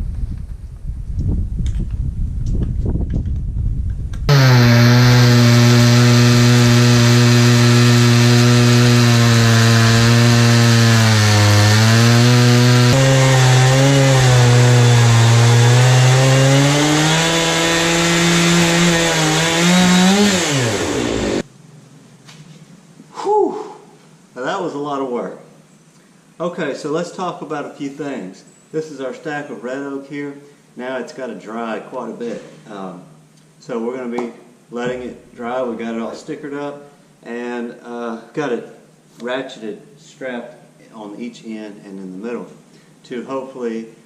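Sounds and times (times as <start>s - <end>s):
chainsaw cutting a log: 4.3s - 21.4s.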